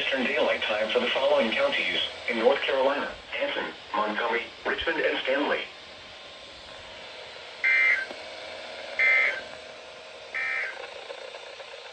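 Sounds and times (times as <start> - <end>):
warbling two-tone data bursts: 7.6 - 8.1, 9.0 - 9.4, 10.4 - 10.8.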